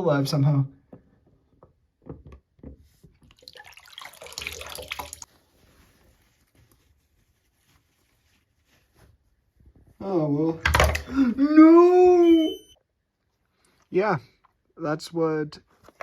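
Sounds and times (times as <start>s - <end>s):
water dripping in a sink: 3.2s - 5.3s
faint water trickling: 3.2s - 6.0s
water splashing: 3.3s - 5.3s.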